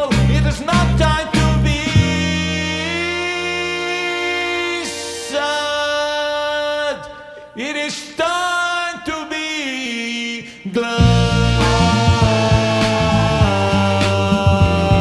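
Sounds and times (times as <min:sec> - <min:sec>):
heavy bass and beat: 0:00.0 - 0:03.0, 0:11.0 - 0:15.0.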